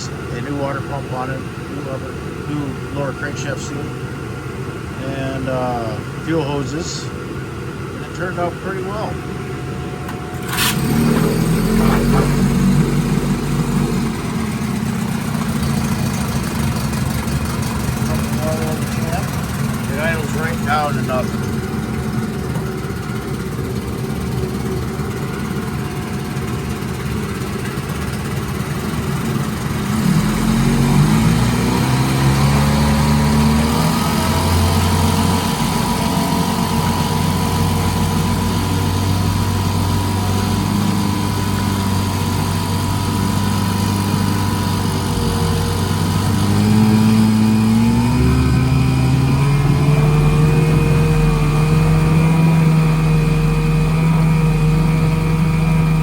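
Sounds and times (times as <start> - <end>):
outboard motor running: 0.0 - 56.0.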